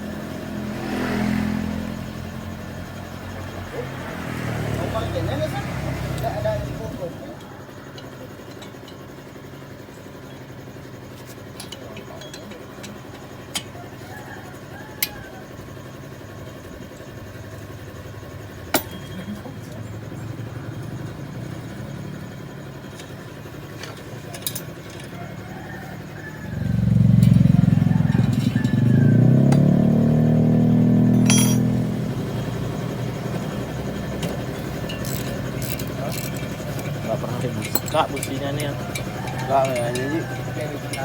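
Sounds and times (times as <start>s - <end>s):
loud engine rumble: 0.0s - 41.0s
motorcycle engine running: 0.0s - 41.0s
metallic tool clinks: 18.7s - 19.6s, 31.1s - 31.9s, 34.1s - 41.0s.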